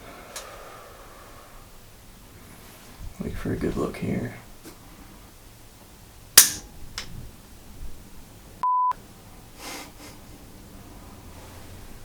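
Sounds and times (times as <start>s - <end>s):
rifle shot: 6.4s - 6.7s
censor bleep tone: 8.6s - 9.0s.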